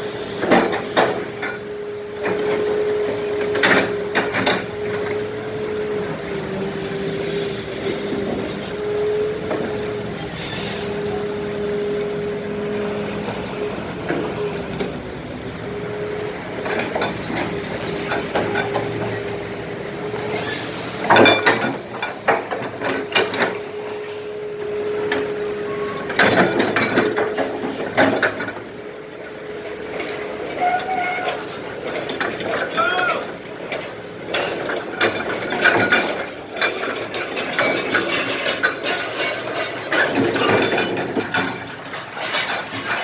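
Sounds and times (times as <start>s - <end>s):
excavator engine and hydraulics whining: 0.0s - 43.0s
broken concrete clattering: 34.3s - 43.0s.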